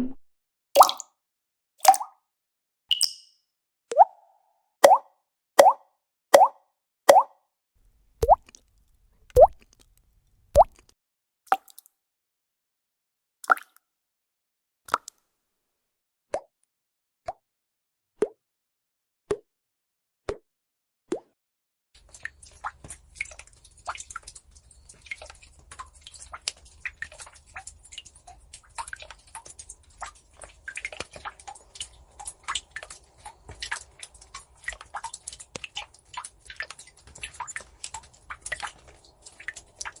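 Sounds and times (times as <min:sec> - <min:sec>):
water dripping: 0:00.8 - 0:01.1, 0:01.8 - 0:02.2, 0:02.9 - 0:05.8, 0:06.4 - 0:07.3, 0:08.2 - 0:10.9, 0:22.1 - 0:40.0.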